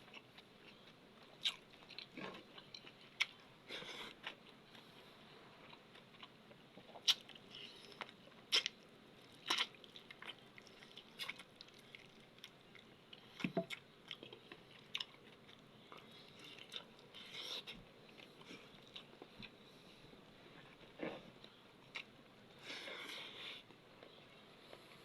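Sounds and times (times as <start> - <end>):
person chewing: 0.1 - 4.9, 5.6 - 19.6.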